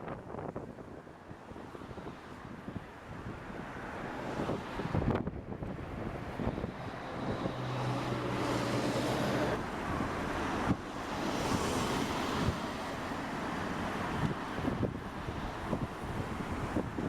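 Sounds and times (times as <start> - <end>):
gusty wind buffeting microphone: 0.0 - 17.0
passing traffic engine hum: 1.3 - 17.0.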